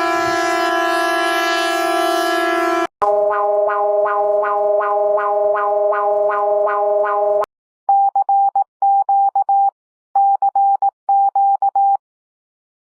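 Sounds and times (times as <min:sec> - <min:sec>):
pulsing chord-like alert: 0:03.0 - 0:07.5.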